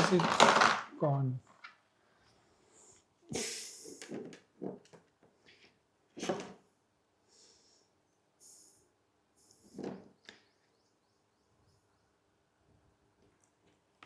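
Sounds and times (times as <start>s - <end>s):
small parts knocking and scraping: 0.0s - 1.8s.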